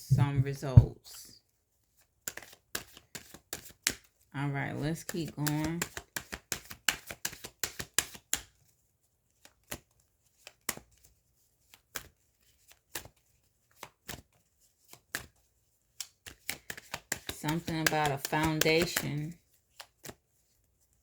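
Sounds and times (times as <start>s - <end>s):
cards being shuffled: 2.2s - 4.1s, 5.0s - 8.6s, 9.4s - 20.2s.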